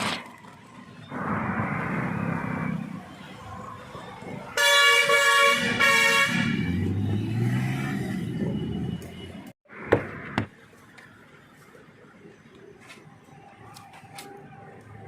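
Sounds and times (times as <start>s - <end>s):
auto rickshaw horn honk: 4.6s - 7.2s.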